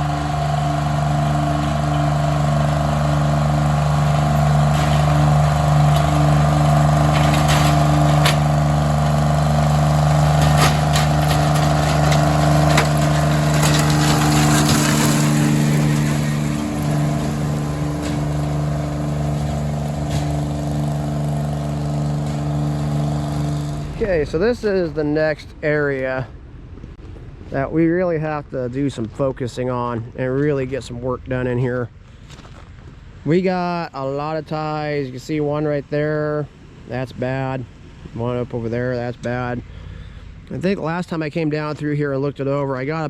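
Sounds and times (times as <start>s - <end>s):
machine engine running: 0.0s - 26.9s
sharp clicks and knocks: 4.1s - 24.0s.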